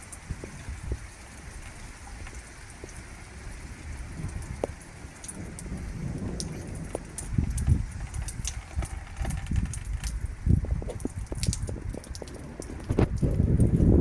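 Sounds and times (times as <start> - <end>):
rain falling: 0.0 - 14.0.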